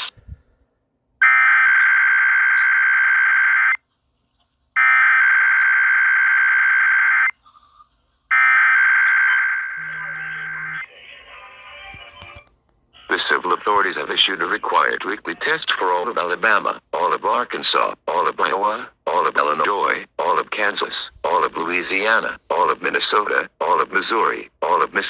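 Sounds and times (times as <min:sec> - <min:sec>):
digital data tone bursts: 0:08.8 - 0:10.9.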